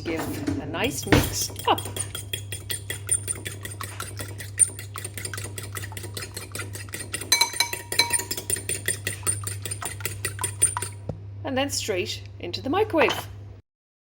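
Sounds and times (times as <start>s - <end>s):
utensil beating egg in bowl: 0.7s - 11.1s.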